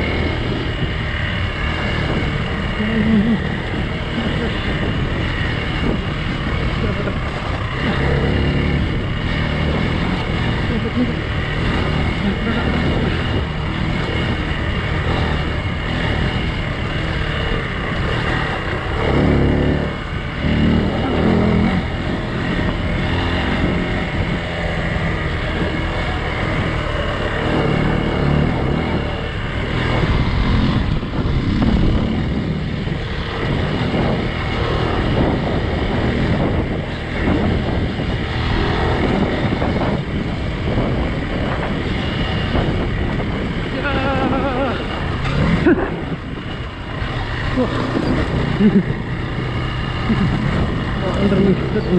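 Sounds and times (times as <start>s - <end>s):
motorcycle engine revving: 0.0s - 51.9s
wind noise on microphone: 0.0s - 51.9s.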